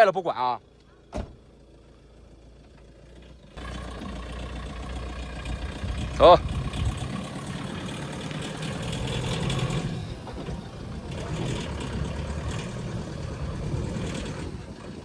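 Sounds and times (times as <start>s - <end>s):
car engine driving slowly: 0.0s - 15.0s.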